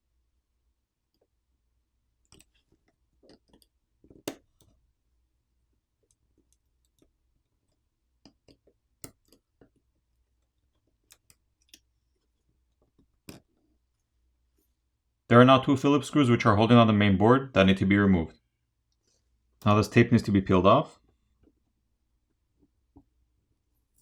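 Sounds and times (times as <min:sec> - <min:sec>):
small clicks and taps of hand tool: 0:02.2 - 0:04.8, 0:06.0 - 0:13.8.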